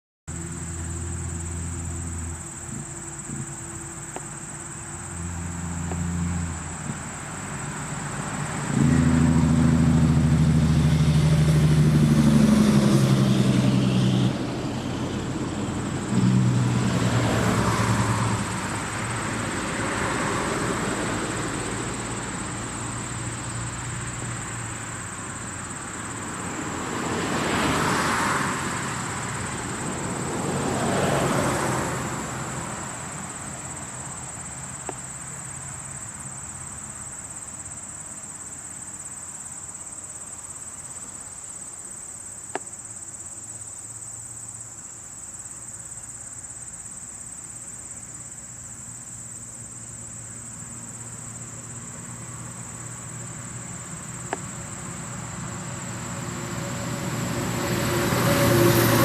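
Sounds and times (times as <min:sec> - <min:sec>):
vehicle engines running: 0:00.3 - 0:27.9, 0:50.2 - 0:59.0
road traffic passing: 0:00.3 - 0:59.0.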